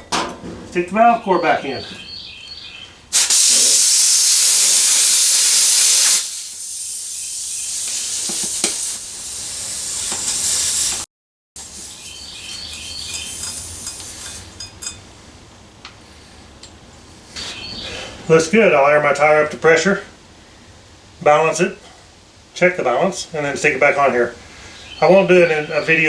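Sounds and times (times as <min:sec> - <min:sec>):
air hissing from tyre valve: 0:03.1 - 0:14.6.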